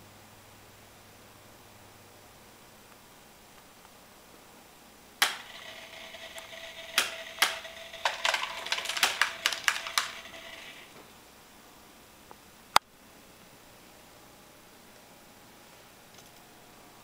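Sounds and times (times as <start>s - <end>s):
small motor humming: 5.3s - 8.5s
dry food rattling out: 7.6s - 10.9s.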